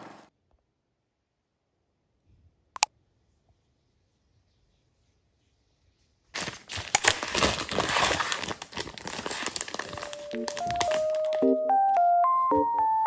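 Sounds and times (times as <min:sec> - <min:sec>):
packaging crinkling and rustling: 0:06.4 - 0:11.4
simple melody of single notes: 0:11.1 - 0:13.0.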